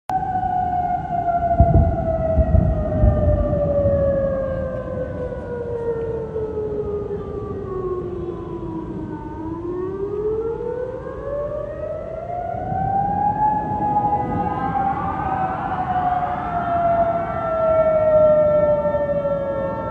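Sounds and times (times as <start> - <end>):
air raid siren wailing: 0.1 - 19.9
second siren tone: 0.1 - 19.9
low rumbling noise: 1.2 - 9.2.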